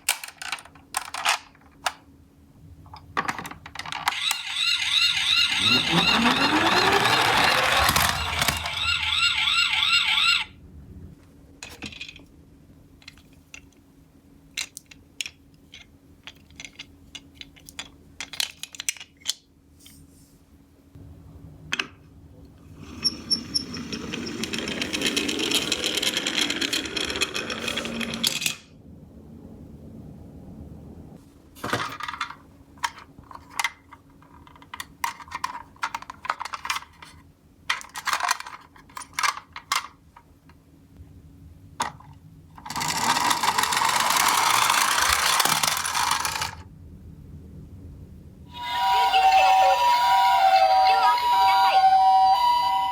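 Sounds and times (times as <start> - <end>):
toy car wheels rolling: 3.8 - 10.5, 22.8 - 28.6, 31.8 - 39.9, 42.6 - 46.6
toy cars clicking: 3.8 - 10.5, 23.0 - 28.6, 31.9 - 40.0, 42.6 - 46.6
toy siren wailing: 4.1 - 10.6, 48.5 - 52.9.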